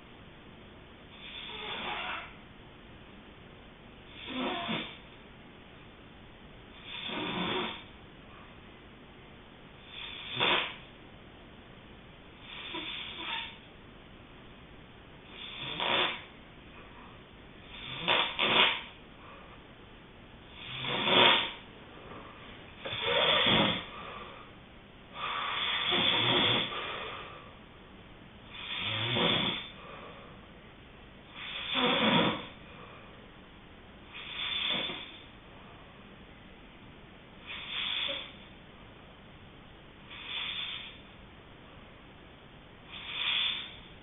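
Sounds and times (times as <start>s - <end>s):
person snoring: 1.1s - 2.3s, 4.1s - 5.1s, 6.8s - 7.9s, 9.8s - 10.8s, 12.4s - 13.6s, 15.3s - 16.3s, 17.7s - 19.0s, 20.5s - 21.6s, 22.8s - 24.3s, 25.2s - 27.2s, 28.5s - 30.1s, 31.4s - 32.6s, 34.1s - 35.3s, 37.5s - 38.4s, 42.9s - 43.9s.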